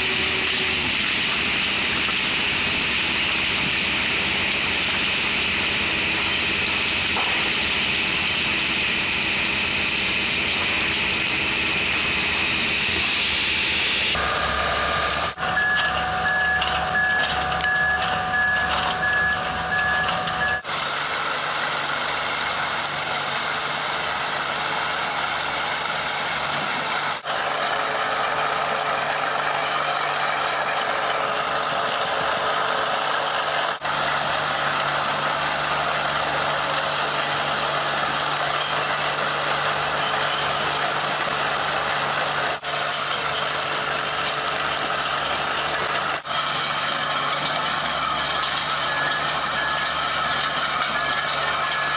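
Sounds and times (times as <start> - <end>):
warning alarm beeping: 0.0 - 20.7
excavator engine and hydraulics: 0.0 - 51.9.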